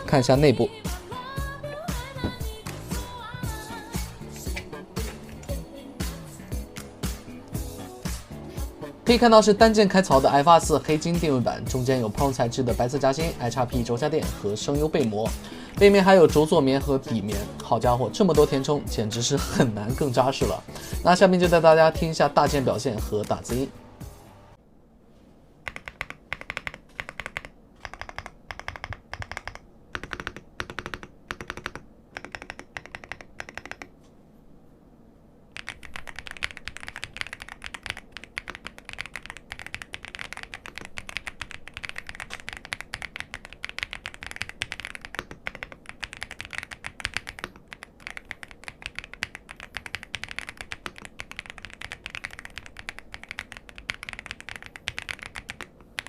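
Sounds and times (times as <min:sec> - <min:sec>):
mechanical keyboard typing: 0:25.6 - 0:33.9, 0:35.6 - 0:56.0.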